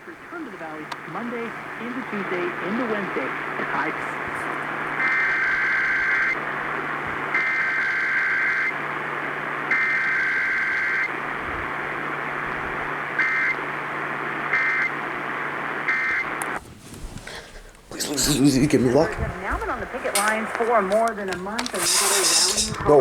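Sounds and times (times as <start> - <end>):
low steady hum: 0.0 - 23.0
radio hiss: 0.0 - 23.0
buzzing two-tone data bursts: 21.7 - 23.0.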